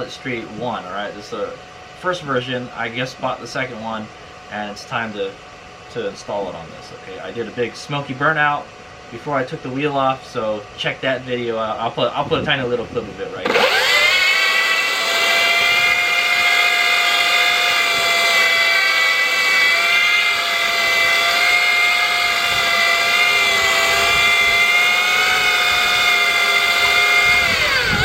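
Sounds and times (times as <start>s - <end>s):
electric motor high-pitched whine: 13.4s - 28.0s.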